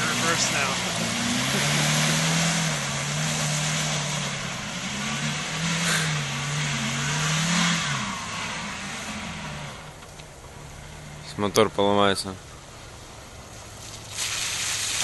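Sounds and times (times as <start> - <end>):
engine revving hard: 0.0 - 10.0.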